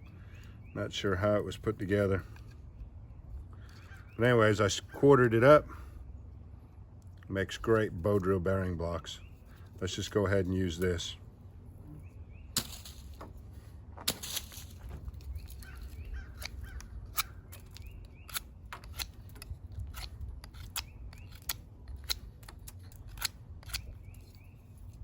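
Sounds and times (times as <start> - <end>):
knife carving wood: 15.3 - 25.0.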